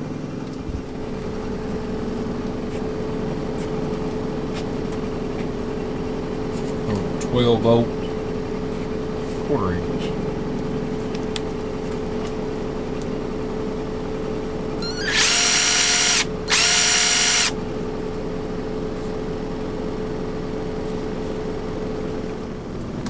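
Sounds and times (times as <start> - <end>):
cordless power tool whine: 14.8 - 18.0.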